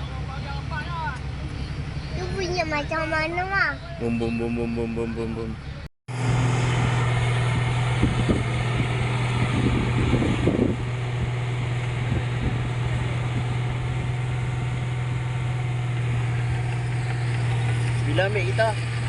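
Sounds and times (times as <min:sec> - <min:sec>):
heavy diesel engine running: 0:00.0 - 0:19.0
machinery noise: 0:04.0 - 0:19.0.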